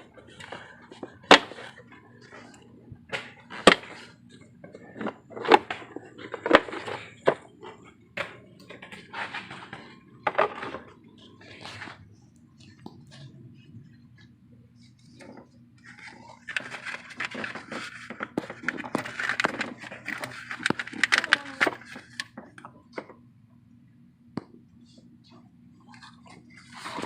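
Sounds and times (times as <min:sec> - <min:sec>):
tools scraping and knocking parts: 0:00.0 - 0:14.0, 0:14.8 - 0:23.2
faint low hum: 0:00.0 - 0:27.0.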